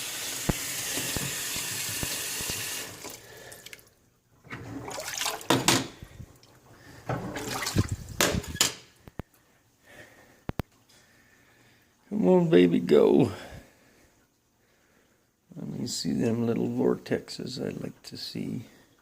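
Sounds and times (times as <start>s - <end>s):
faucet running: 0.0s - 3.8s
water splashing and sloshing: 0.8s - 8.6s.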